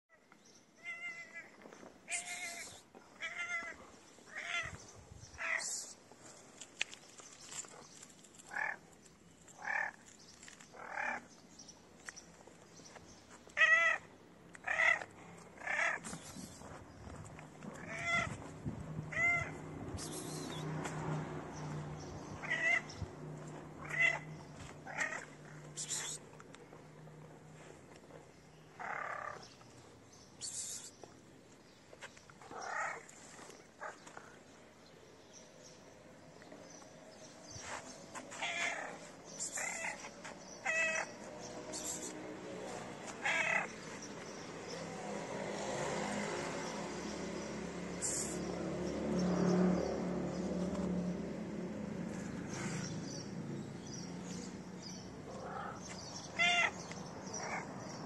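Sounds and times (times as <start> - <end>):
cat meowing: 17.8 - 18.4, 19.1 - 19.6, 22.4 - 22.9, 56.3 - 56.8.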